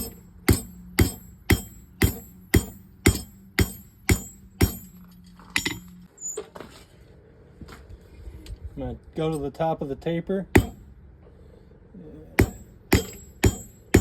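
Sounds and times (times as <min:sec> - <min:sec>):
hammer striking steel on anvil: 0:00.0 - 0:05.0, 0:05.6 - 0:05.9, 0:10.6 - 0:10.9, 0:12.4 - 0:14.0.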